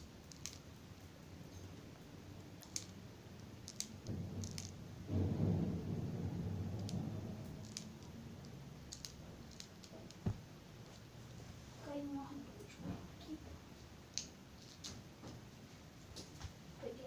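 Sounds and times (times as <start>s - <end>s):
plastic pellets clicking into magazine: 2.6s - 4.8s, 7.6s - 8.2s, 8.9s - 10.2s
dull rubbing handling noise: 10.0s - 11.1s.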